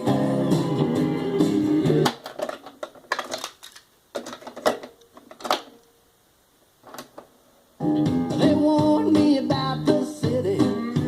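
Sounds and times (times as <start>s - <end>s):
song playing from cassette: 0.0s - 2.8s, 7.8s - 11.0s.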